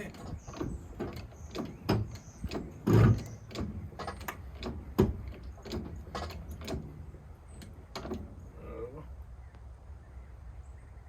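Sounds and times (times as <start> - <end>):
jack clicking and knocking: 0.0 - 8.5
loud thumps: 0.2 - 7.1.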